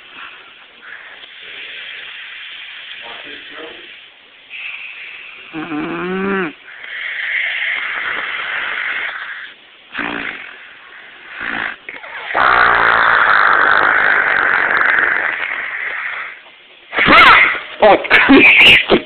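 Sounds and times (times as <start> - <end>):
snorts: 0.0 - 19.0
woman snoring: 5.5 - 9.3.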